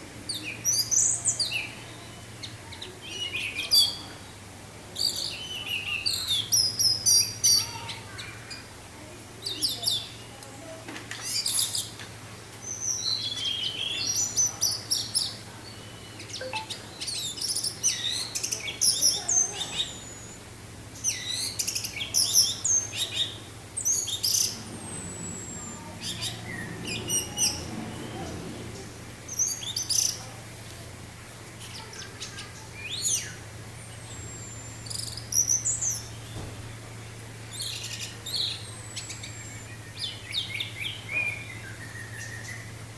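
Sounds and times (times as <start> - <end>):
thrush singing: 22.8 - 30.2
steady low hum: 22.8 - 31.5.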